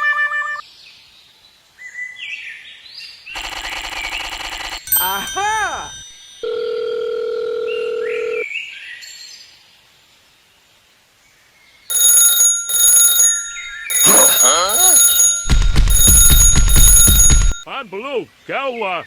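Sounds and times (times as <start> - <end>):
high electronic alarm ringing: 3.4 - 8.4, 11.9 - 17.7
steady electronic beep: 13.8 - 17.6.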